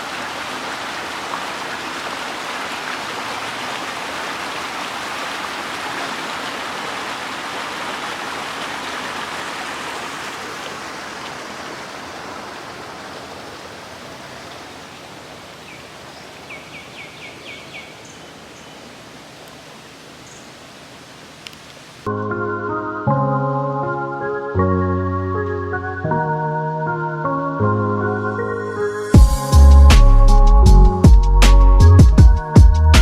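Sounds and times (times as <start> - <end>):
river water flowing: 0.0 - 23.0.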